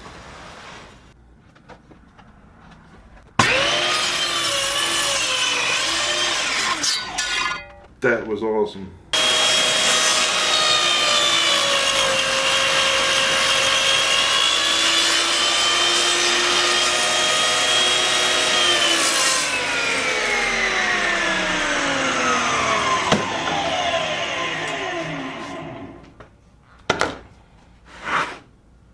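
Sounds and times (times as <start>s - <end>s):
table saw cutting wood: 3.4s - 7.6s, 9.2s - 26.1s.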